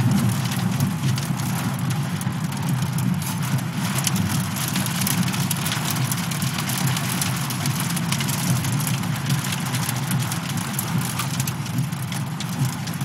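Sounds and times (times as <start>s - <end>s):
vehicle engine rumbling: 0.0s - 7.2s
heavy rain pattering on vehicle: 0.0s - 13.0s.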